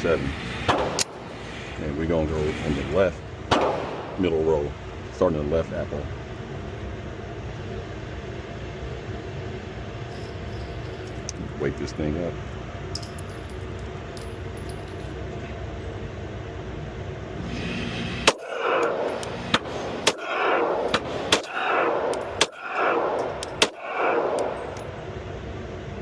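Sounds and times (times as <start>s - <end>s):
pistol shots: 3.5s - 4.2s, 18.2s - 24.6s.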